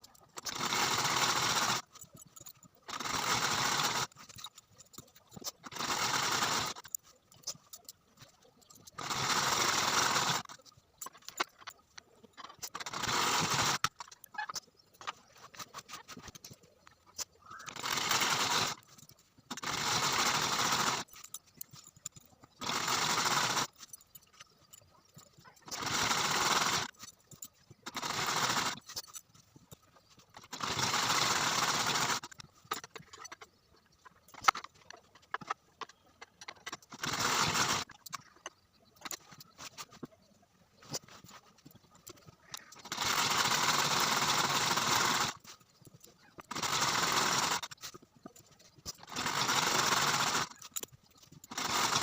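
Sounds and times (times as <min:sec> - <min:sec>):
sewing machine stitching: 0:00.4 - 0:04.6, 0:05.4 - 0:07.0, 0:08.8 - 0:10.6, 0:12.6 - 0:14.2, 0:17.6 - 0:21.4, 0:22.6 - 0:23.8, 0:25.6 - 0:27.1, 0:27.8 - 0:29.2, 0:30.3 - 0:32.9, 0:36.6 - 0:38.0, 0:42.5 - 0:45.6, 0:46.4 - 0:48.0, 0:48.8 - 0:52.0.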